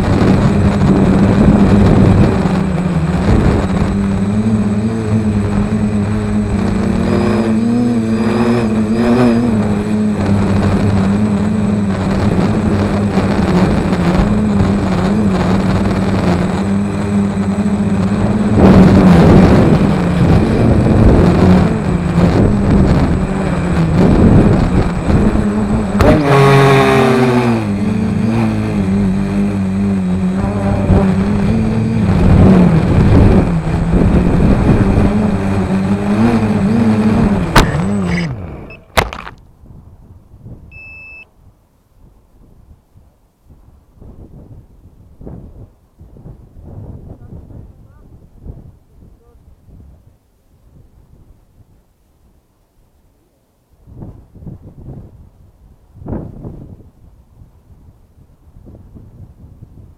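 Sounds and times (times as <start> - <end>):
drone motors buzzing: 0.0 - 39.4.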